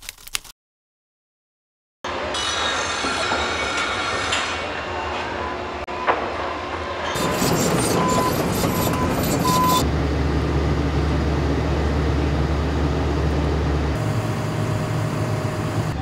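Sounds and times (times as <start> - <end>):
construction machinery engine hum: 5.9 - 16.0
short high beeps: 7.2 - 9.8.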